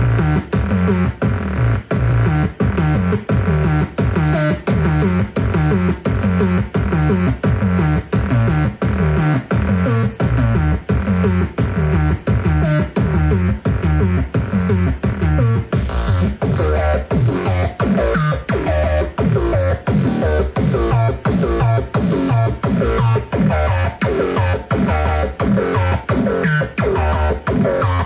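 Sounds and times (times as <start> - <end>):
synthesizer arpeggio with gliding notes: 6.4 - 28.0.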